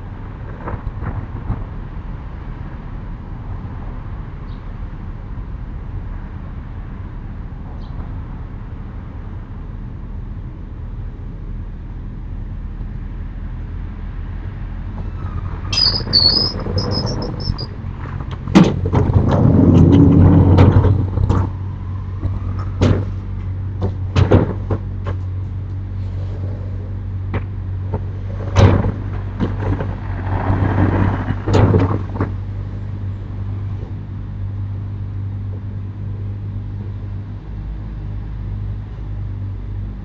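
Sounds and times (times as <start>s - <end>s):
low steady hum: 0.0s - 40.0s
shutters rumbling along tracks: 7.5s - 40.0s
panels knocking and banging: 22.8s - 25.2s.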